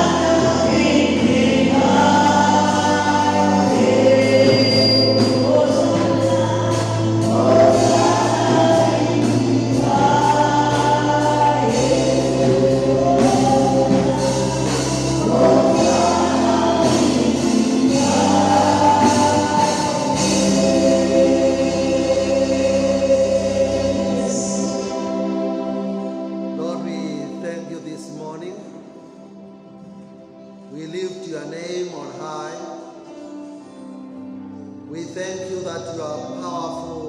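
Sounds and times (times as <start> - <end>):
sustained bass: 0.0 - 25.9
gospel choir singing: 0.0 - 37.0.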